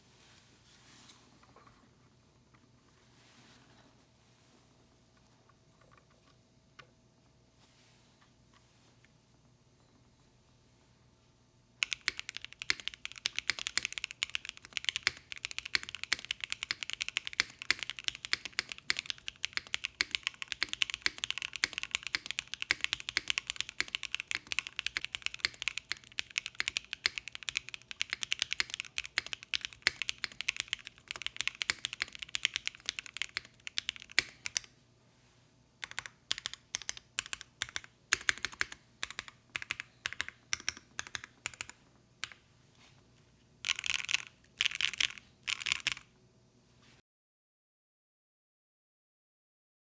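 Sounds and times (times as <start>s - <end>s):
mechanical keyboard typing: 11.8s - 34.7s, 35.8s - 42.4s, 43.6s - 46.1s.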